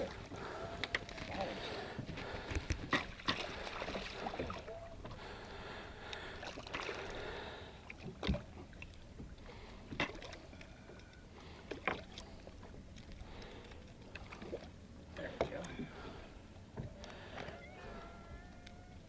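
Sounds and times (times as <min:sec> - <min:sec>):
water washing around boat: 0:00.0 - 0:19.0
wind: 0:00.0 - 0:19.0.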